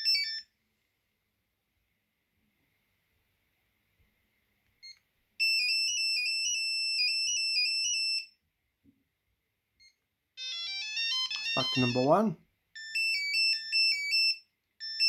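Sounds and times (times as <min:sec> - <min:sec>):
phone ringtone melody: 0:00.0 - 0:00.5, 0:05.4 - 0:08.4, 0:10.4 - 0:15.0
phone beep: 0:09.8 - 0:15.0.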